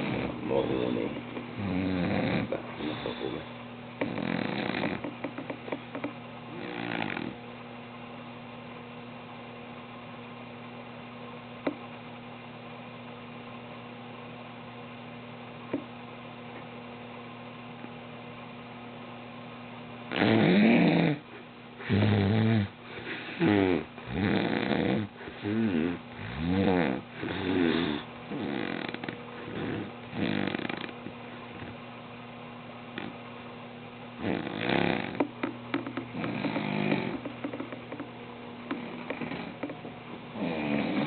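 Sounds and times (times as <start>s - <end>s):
man snoring loudly: 0.0s - 5.1s, 6.5s - 7.4s, 20.1s - 21.2s, 21.8s - 30.9s, 34.2s - 35.3s, 36.2s - 37.3s, 38.7s - 39.7s, 40.3s - 41.0s
steady low hum: 0.0s - 41.0s.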